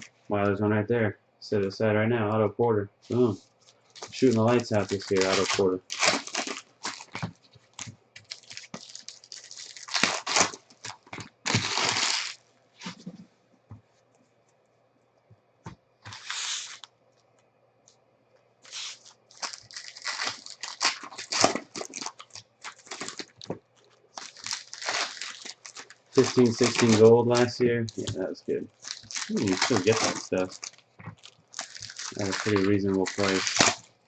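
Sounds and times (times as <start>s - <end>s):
foil wrappers crinkling and tearing: 3.1s - 13.0s, 16.1s - 16.9s, 18.6s - 34.0s
cards being handled: 3.1s - 13.2s, 18.7s - 33.8s.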